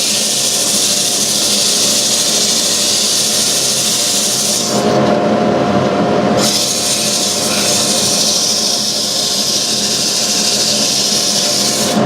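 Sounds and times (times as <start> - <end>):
gritty sanding hiss: 0.0 - 4.8, 6.4 - 12.0
motor hum: 6.2 - 12.0.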